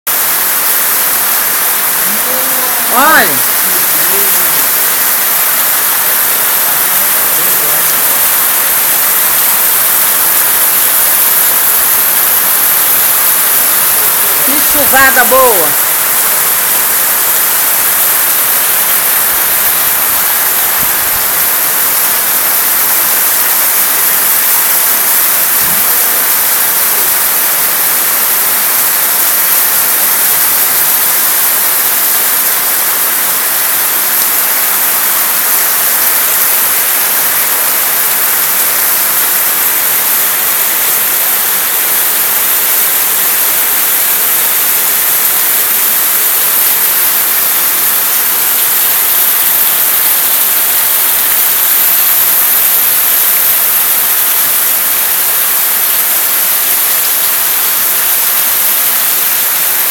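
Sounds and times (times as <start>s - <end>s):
heavy rain: 0.1s - 46.6s.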